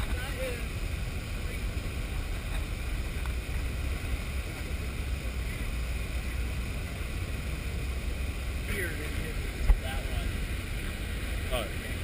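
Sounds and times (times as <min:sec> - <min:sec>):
muffled rushing floodwater: 0:00.0 - 0:12.0.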